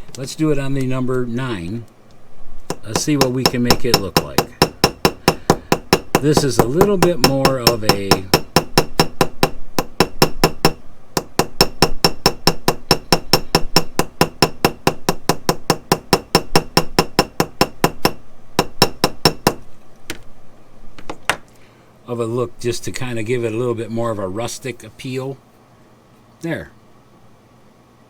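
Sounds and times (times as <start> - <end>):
hammer tapping on copper rivet: 2.6 - 20.3.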